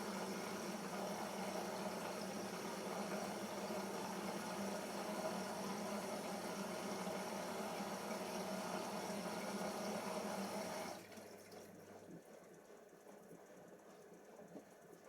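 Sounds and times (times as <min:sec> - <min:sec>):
water rushing into washing machine: 0:00.0 - 0:11.9.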